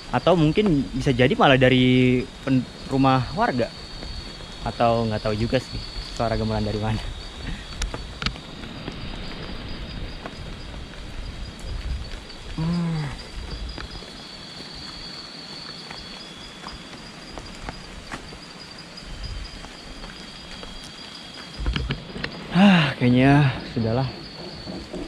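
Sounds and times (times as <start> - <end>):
insects chirring: 0.0 - 25.0
person humming: 12.6 - 13.2.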